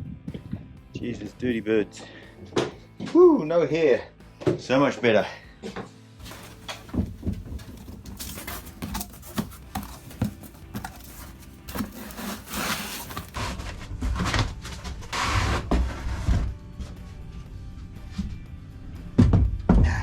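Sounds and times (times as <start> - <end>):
scuffing scrapes: 6.2 - 15.3
boxes being handled: 6.2 - 16.0.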